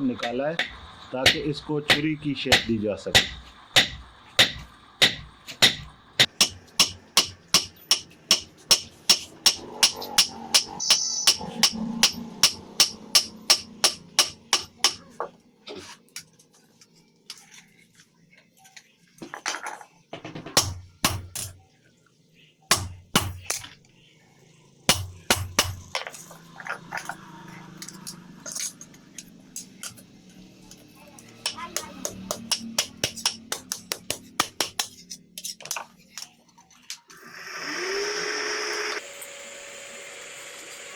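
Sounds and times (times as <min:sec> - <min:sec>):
hammer ringing on anvil: 0:00.6 - 0:15.0.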